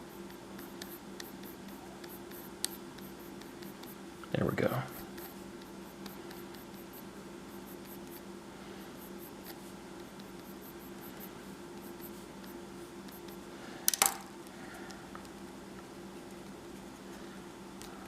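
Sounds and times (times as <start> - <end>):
pencil scratching on paper: 0.0 - 4.0, 4.8 - 8.2, 8.9 - 13.4.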